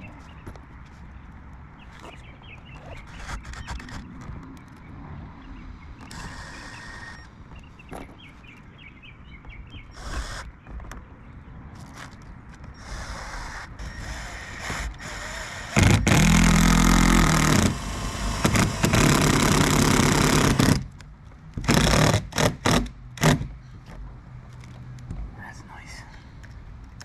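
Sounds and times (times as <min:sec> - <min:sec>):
cordless drill driving screws: 0:06.0 - 0:07.3, 0:09.9 - 0:10.5, 0:12.8 - 0:20.9, 0:21.6 - 0:23.4.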